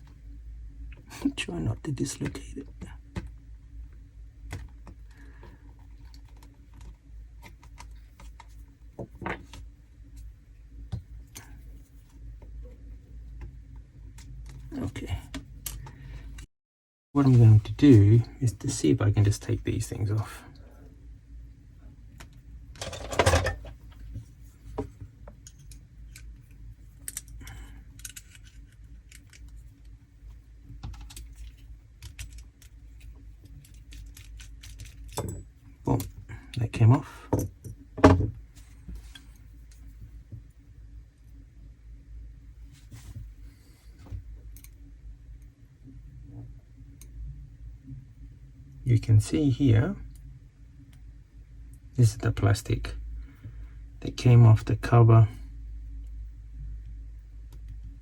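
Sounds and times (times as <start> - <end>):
plastic laptop parts clicking: 28.0 - 29.6, 33.6 - 35.3.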